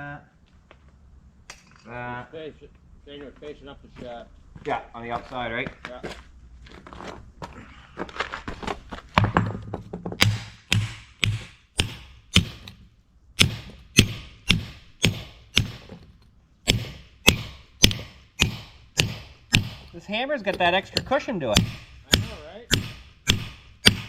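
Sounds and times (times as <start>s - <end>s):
hammer striking metal: 10.2s - 12.8s, 13.4s - 16.0s, 16.7s - 24.0s.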